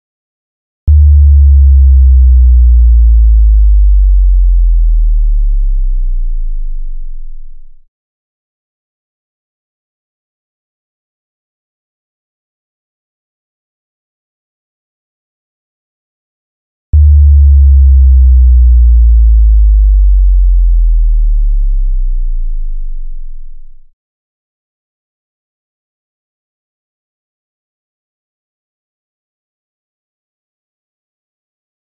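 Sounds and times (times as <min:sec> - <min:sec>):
cinematic bass drop: 0:00.9 - 0:07.8, 0:17.0 - 0:23.9.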